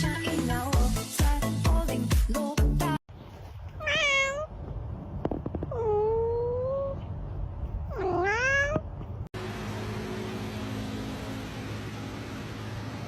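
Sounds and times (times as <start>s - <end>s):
cat meowing: 3.8s - 4.5s, 7.9s - 8.9s.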